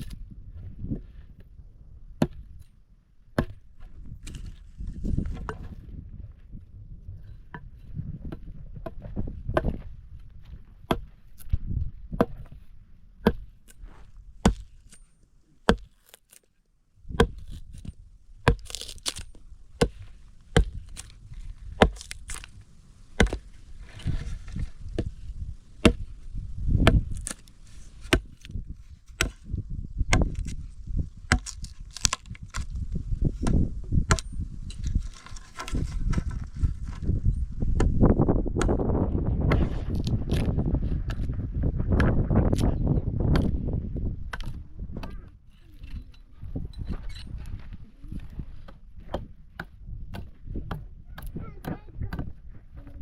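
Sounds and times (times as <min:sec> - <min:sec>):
tool striking wood: 0:13.2 - 0:13.5, 0:14.4 - 0:15.1, 0:15.7 - 0:16.0, 0:17.1 - 0:22.5, 0:23.2 - 0:23.5, 0:25.0 - 0:26.2, 0:26.8 - 0:27.4, 0:28.0 - 0:28.5, 0:29.1 - 0:29.5, 0:30.1 - 0:30.6, 0:33.4 - 0:34.4.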